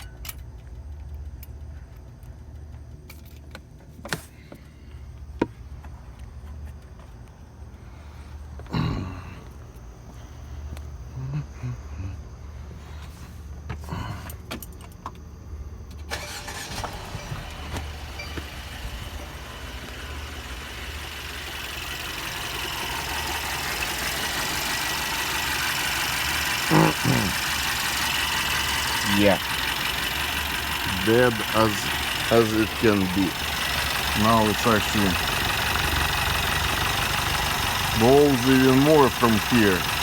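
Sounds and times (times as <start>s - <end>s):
misfiring engine idling: 15.3s - 40.0s.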